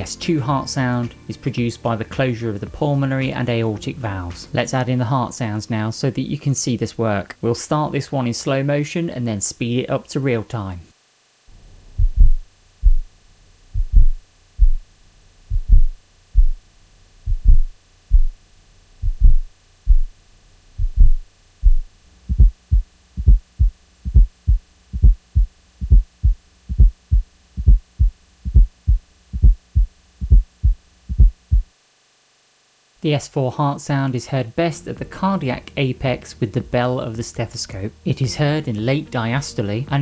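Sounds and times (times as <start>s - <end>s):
heartbeat thuds: 11.5s - 31.8s.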